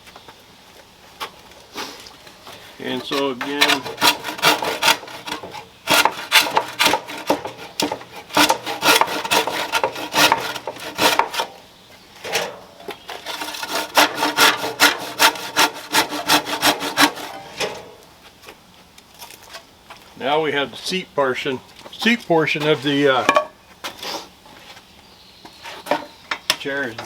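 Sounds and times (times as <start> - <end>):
handsaw cutting wood: 3.0 - 11.5, 13.1 - 17.5.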